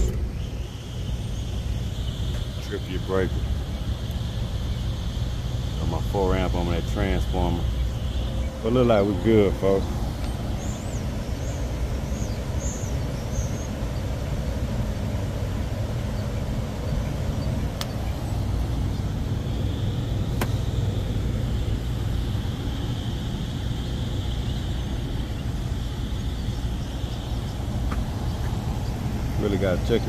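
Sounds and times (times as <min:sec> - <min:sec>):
air conditioner humming: 0:00.0 - 0:30.0
sharp clicks: 0:20.3 - 0:20.7.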